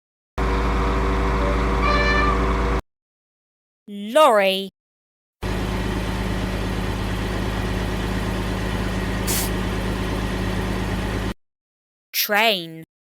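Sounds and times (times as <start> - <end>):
lorry engine idling: 5.4 - 11.4
air hiss: 9.2 - 9.6.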